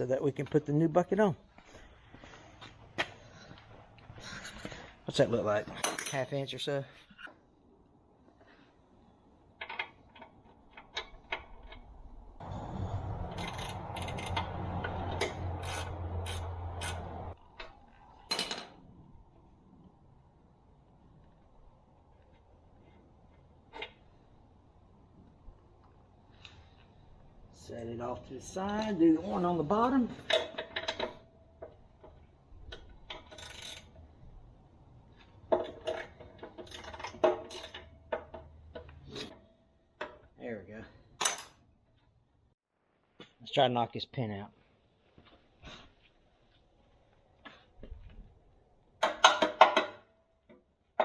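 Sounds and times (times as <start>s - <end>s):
metal tools clinking: 5.7s - 6.4s
metal scraping: 12.4s - 17.4s.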